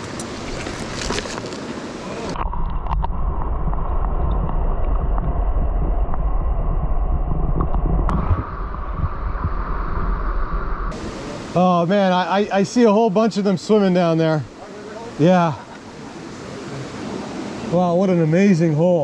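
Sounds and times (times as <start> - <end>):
rushing stream water: 0.0 - 3.0, 8.1 - 19.0
wind buffeting microphone: 2.3 - 11.5
deep rumble: 2.4 - 11.0.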